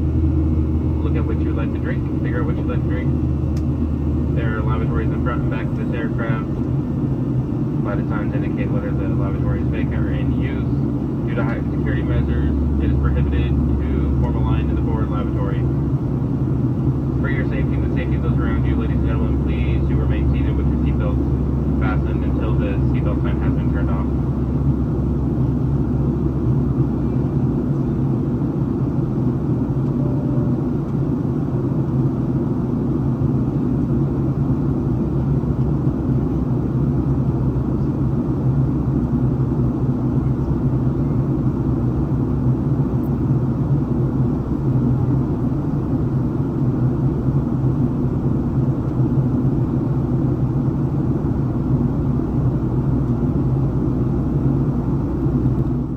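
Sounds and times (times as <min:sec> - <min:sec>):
airplane cabin jet engine rush: 0:00.0 - 0:55.9.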